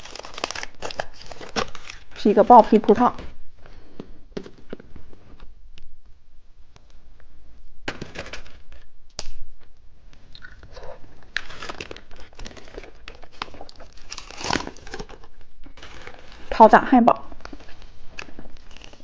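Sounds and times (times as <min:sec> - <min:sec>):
plastic packaging crinkling: 0:00.0 - 0:03.2, 0:10.4 - 0:16.6, 0:17.2 - 0:19.0.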